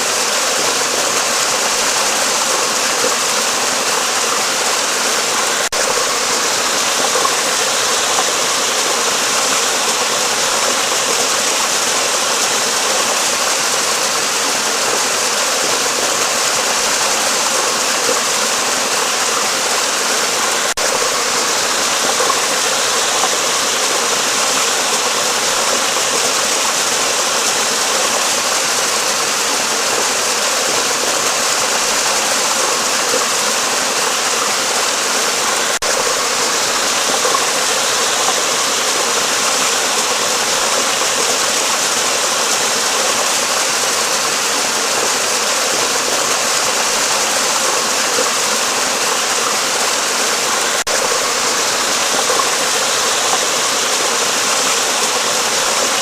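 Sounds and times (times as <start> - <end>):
water rushing: 0.0 - 56.0.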